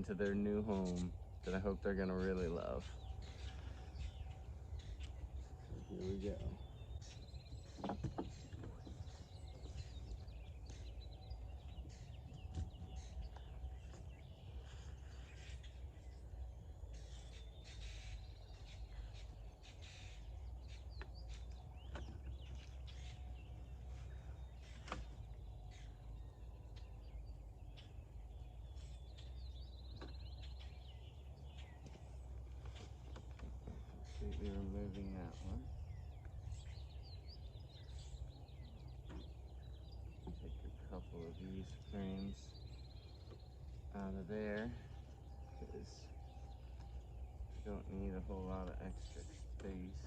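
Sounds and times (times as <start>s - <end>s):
birds calling: 0.0s - 50.0s
steady low rumble: 0.0s - 50.0s
sharp clicks and knocks: 7.7s - 9.0s.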